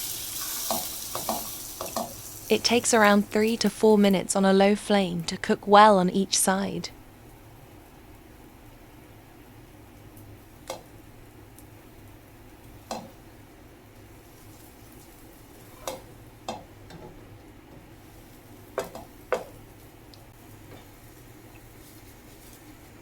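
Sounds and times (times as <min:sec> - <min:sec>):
bread sizzling in a pan: 0:00.0 - 0:03.5, 0:07.1 - 0:23.0
utensil knocking against pan: 0:18.8 - 0:19.6.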